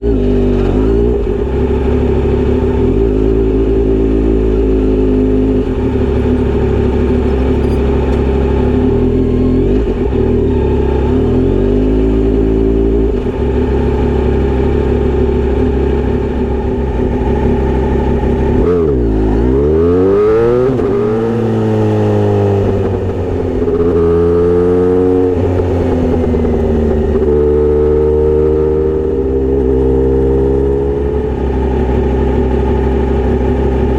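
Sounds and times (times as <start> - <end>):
motorcycle engine revving: 0.0 - 33.9
motorcycle engine idling: 0.3 - 19.6, 25.2 - 27.9, 31.0 - 33.9.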